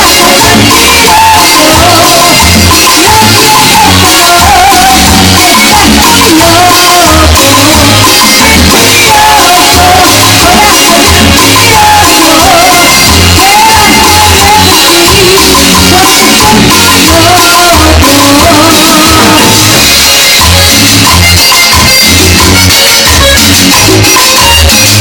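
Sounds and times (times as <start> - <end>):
drums: 0.0 - 25.0
repeating bass line: 0.0 - 25.0.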